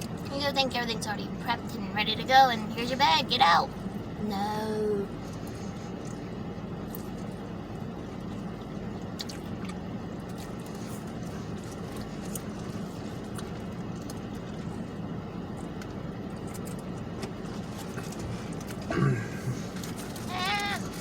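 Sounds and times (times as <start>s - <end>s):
low hum: 0.0s - 21.0s
wet chewing squishes: 5.1s - 21.0s.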